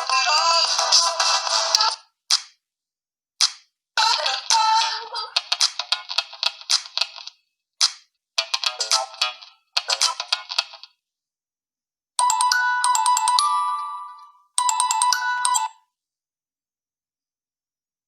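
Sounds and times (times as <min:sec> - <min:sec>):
smartphone ringtone melody: 0:12.2 - 0:15.8.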